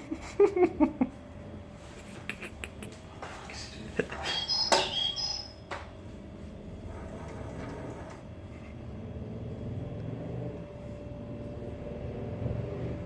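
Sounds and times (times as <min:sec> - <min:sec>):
electronic bird chirp with clicks: 0:04.3 - 0:05.6.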